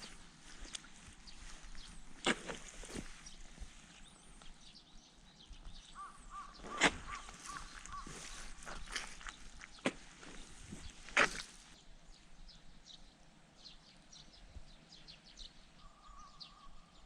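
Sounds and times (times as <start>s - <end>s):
faint bird chirps: 0.0s - 11.5s, 12.1s - 17.0s
bird calling short repeated notes: 6.0s - 9.0s.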